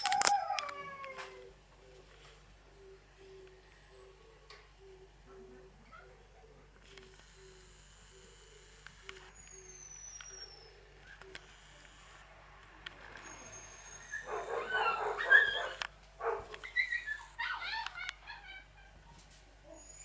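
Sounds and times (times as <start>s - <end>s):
puppies whimpering and yelping: 9.3s - 11.2s, 13.2s - 20.0s.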